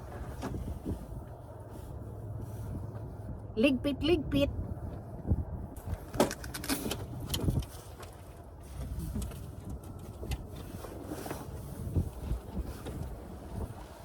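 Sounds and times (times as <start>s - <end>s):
steady low rumble: 0.0s - 14.0s
camping gear knocking and clattering: 5.8s - 13.6s.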